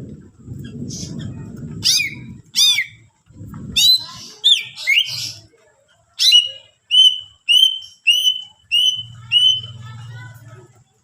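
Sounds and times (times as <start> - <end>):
bird singing: 3.8 - 5.4, 6.2 - 10.0.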